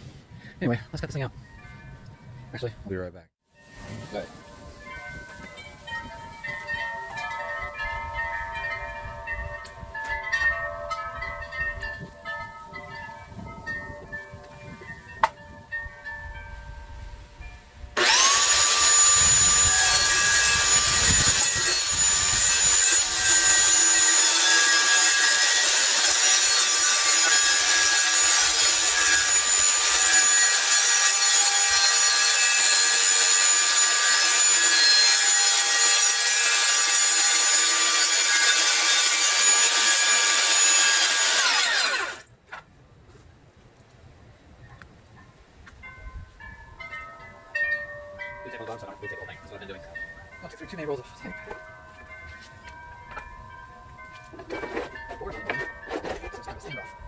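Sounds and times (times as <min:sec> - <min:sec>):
power tool cutting panel: 0:18.0 - 0:42.2.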